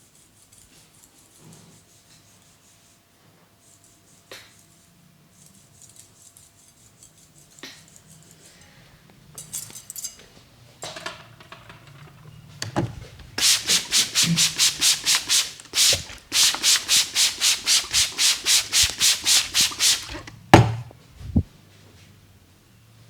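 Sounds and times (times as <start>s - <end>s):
rubbing on hair and scalp: 12.7s - 21.5s
sharp knock: 20.6s - 21.5s.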